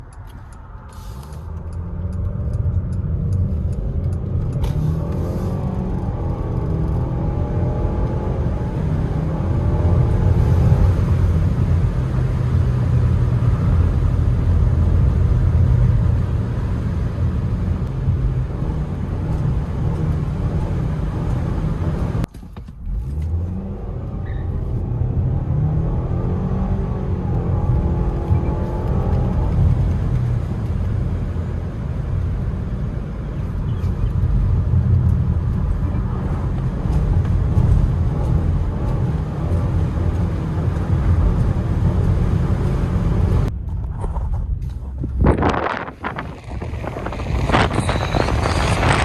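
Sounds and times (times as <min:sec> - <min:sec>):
tire roar on road: 0:00.0 - 0:49.0
wavering hum: 0:45.1 - 0:49.0.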